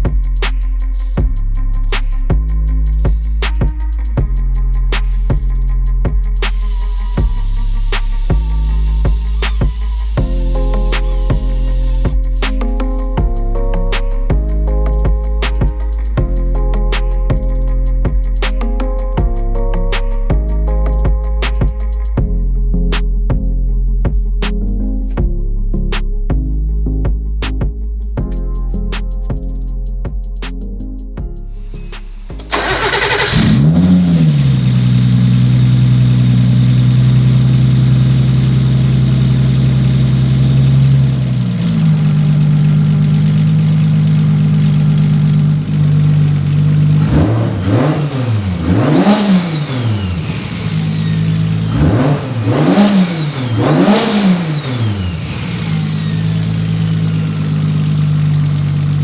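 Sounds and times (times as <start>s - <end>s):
car engine starting and idling: 6.4s - 12.9s, 31.9s - 59.0s
engine throttle blips: 32.4s - 59.0s.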